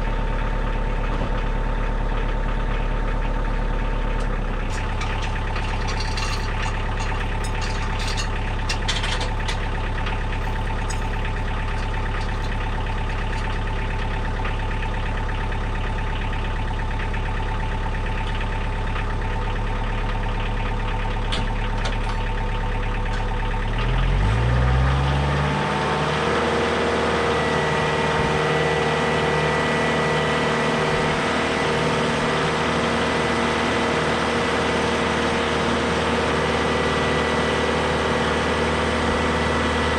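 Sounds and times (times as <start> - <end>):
tractor engine idling and revving: 0.0 - 39.9
light metal clanks: 4.7 - 13.9.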